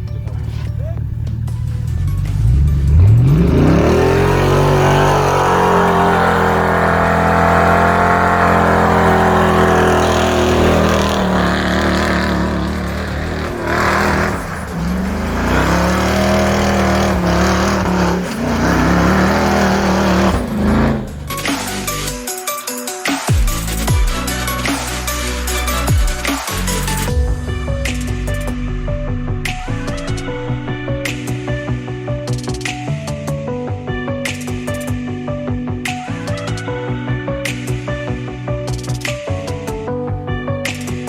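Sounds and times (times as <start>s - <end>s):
truck engine revving: 0.6s - 22.2s.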